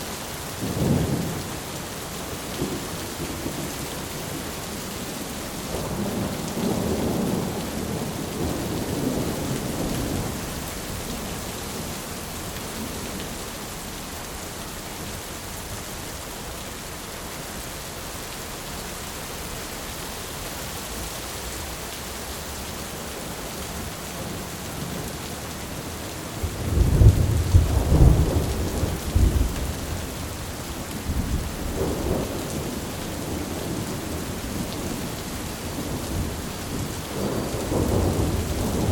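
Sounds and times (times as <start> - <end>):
heavy rain: 0.0 - 38.9
thunder rumbling: 23.2 - 38.9
sharp thunderclap: 26.4 - 30.0, 35.8 - 38.9.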